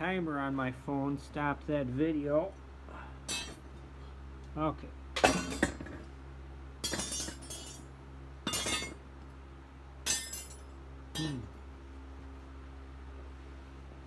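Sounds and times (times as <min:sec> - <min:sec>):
hard junk clattering onto pile: 0:05.2 - 0:06.0, 0:06.8 - 0:07.8.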